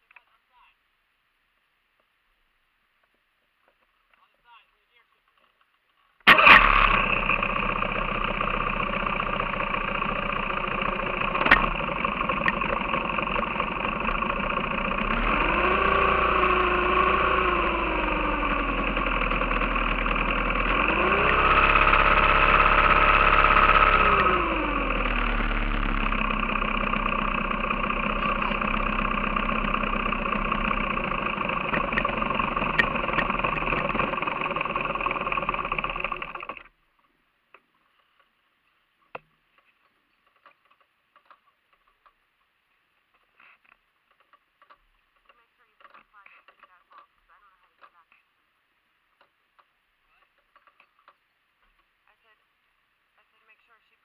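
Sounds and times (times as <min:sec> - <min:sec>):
outboard motor idling and revving: 0:06.3 - 0:36.7.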